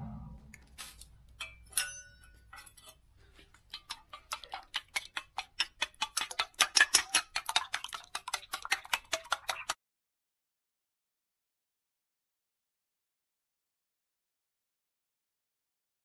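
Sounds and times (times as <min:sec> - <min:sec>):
chopsticks beating eggs in bowl: 0:02.4 - 0:09.8.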